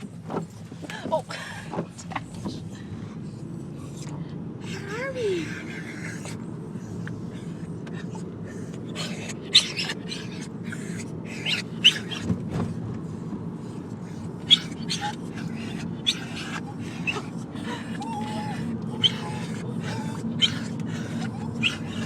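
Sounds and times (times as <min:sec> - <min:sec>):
dogs whining and yelping: 0:03.2 - 0:22.0
car cabin rumble: 0:06.3 - 0:22.0.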